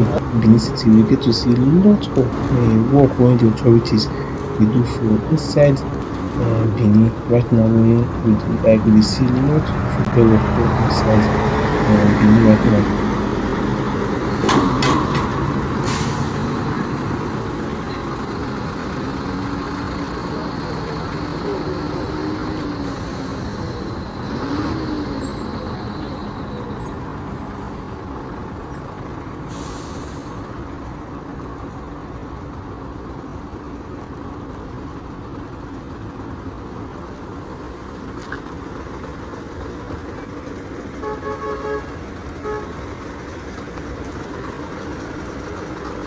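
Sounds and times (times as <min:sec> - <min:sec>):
road traffic rumble: 0:00.0 - 0:46.0
car horn short toots: 0:41.0 - 0:42.7.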